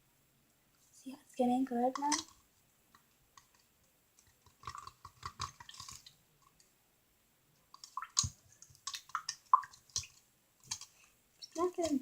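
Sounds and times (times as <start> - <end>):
slime squelching in a cup: 4.2 - 6.2, 7.7 - 12.0.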